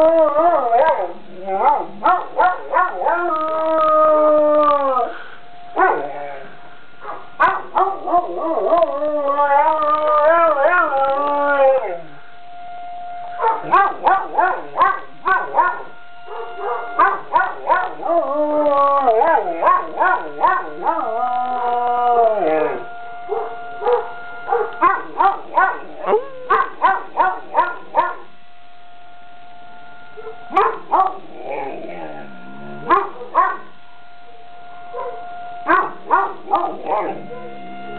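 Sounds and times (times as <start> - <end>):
dog howling: 0.0 - 5.2, 5.8 - 12.2, 13.4 - 28.3, 30.2 - 33.7, 34.9 - 37.9
faint siren tone: 0.0 - 37.9
dog yapping: 7.0 - 8.0, 13.4 - 18.0, 23.3 - 25.9, 26.5 - 28.2, 32.9 - 33.6, 35.0 - 37.5.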